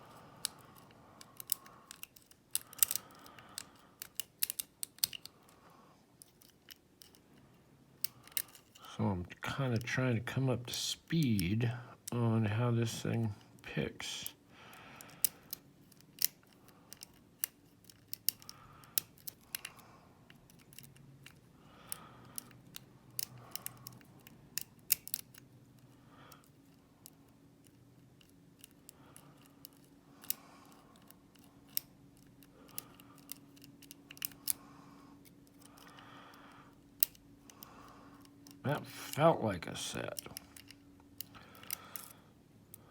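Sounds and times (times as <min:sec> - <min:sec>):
lock pick clicking in padlock: 0:01.3 - 0:05.3, 0:15.0 - 0:26.4, 0:27.0 - 0:34.6.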